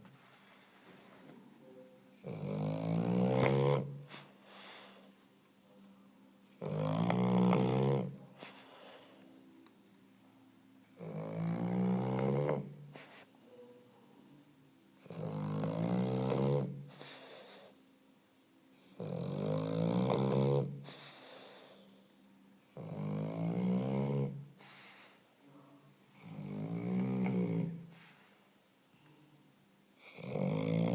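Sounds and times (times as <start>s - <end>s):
dog snoring: 2.1s - 5.1s, 6.4s - 9.4s, 10.8s - 14.3s, 15.0s - 17.8s, 18.7s - 25.2s, 26.1s - 28.4s, 29.9s - 30.9s
dog breathing quietly: 3.3s - 5.3s, 7.1s - 9.6s, 12.5s - 14.5s, 16.3s - 18.0s, 20.4s - 22.8s, 23.6s - 25.5s, 26.2s - 28.8s.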